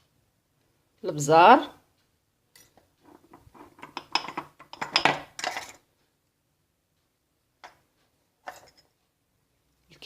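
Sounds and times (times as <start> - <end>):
utensils tapping a cooking pot: 2.6 - 5.8.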